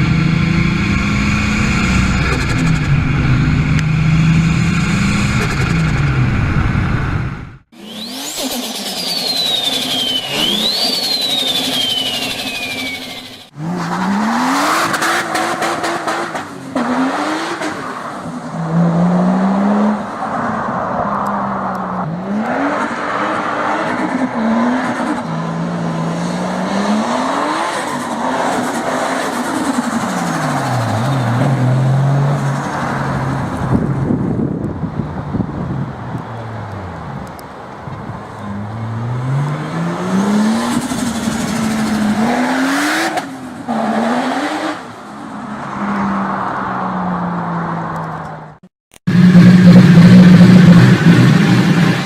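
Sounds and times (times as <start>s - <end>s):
car engine revving through gears: 0.0s - 17.9s, 38.6s - 44.9s, 49.1s - 52.0s
turbo whistle: 7.8s - 13.5s.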